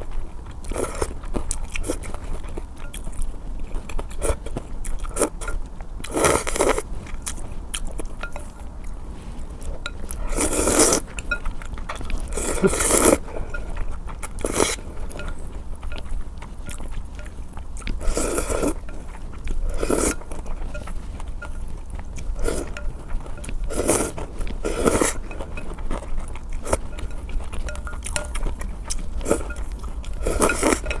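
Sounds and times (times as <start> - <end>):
wet smacking and chewing: 0.0 - 31.0
noodle slurping: 9.6 - 31.0.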